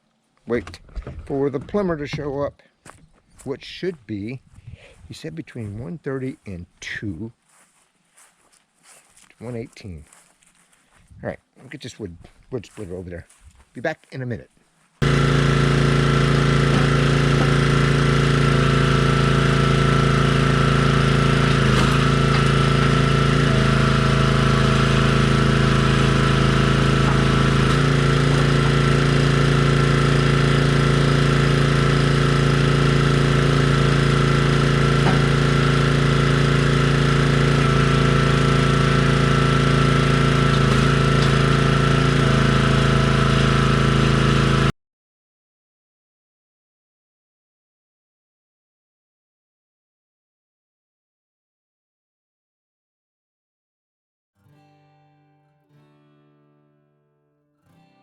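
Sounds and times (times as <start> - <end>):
engine running steadily: 15.0 - 44.7.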